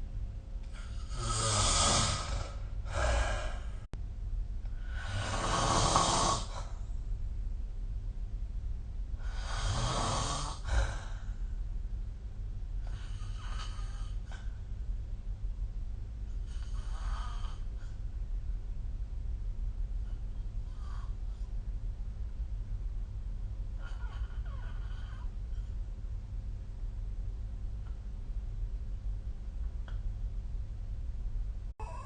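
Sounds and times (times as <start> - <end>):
steady low hum: 0.0 - 32.0
person snoring: 0.8 - 3.9, 4.8 - 6.7, 9.2 - 11.2, 31.8 - 32.0.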